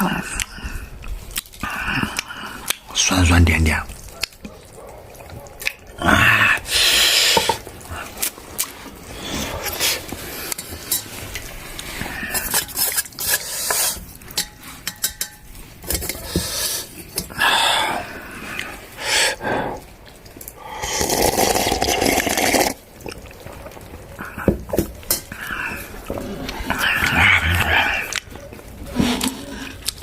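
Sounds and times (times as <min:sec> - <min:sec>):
dishes and utensils clinking: 0:10.5 - 0:11.4, 0:12.3 - 0:16.5.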